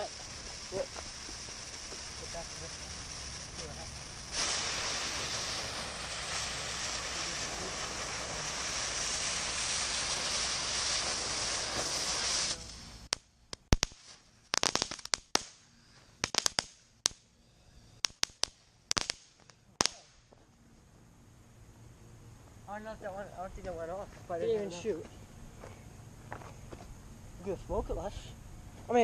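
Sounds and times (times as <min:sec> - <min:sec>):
gunpowder burning with loud hiss: 0:00.0 - 0:29.0
sharp cracks and pops: 0:12.6 - 0:15.6, 0:16.2 - 0:17.2, 0:18.0 - 0:20.4.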